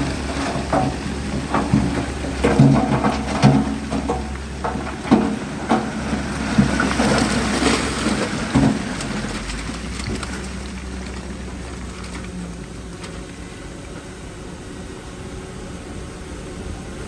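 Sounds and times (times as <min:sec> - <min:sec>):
stones and dirt clattering: 0:00.0 - 0:13.4
heavy diesel engine running: 0:00.0 - 0:17.0.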